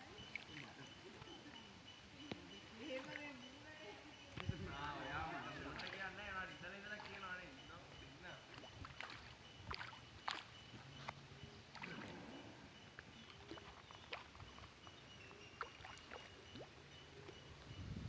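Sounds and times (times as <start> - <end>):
water splashing and sloshing: 4.4 - 17.7.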